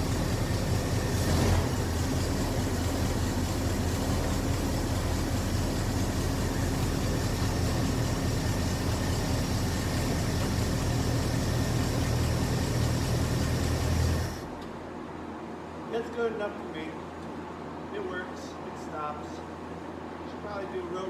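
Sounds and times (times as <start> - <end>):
car engine droning: 0.0 - 14.6.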